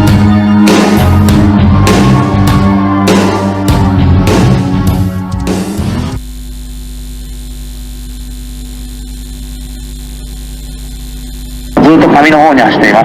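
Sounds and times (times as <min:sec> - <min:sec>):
background music: 0:00.0 - 0:06.2
electrical mains hum: 0:06.2 - 0:13.0.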